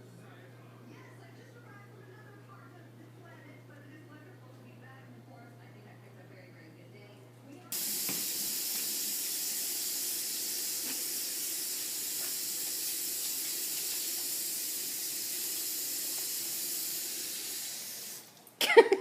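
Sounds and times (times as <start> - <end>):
tap water running: 7.7 - 19.0.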